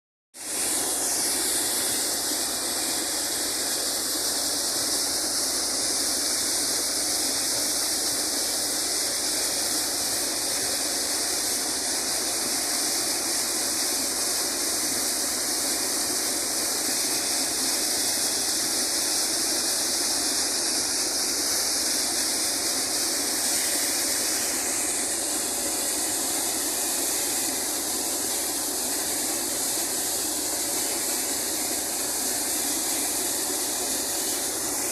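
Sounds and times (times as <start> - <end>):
rush of air and water: 0.4 - 34.9.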